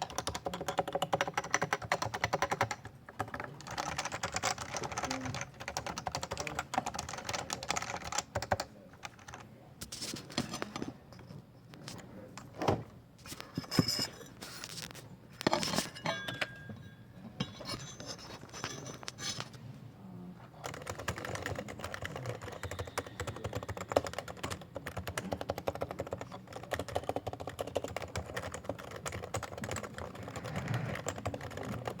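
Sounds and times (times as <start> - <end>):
keyboard typing: 0.0 - 10.9, 20.6 - 32.0.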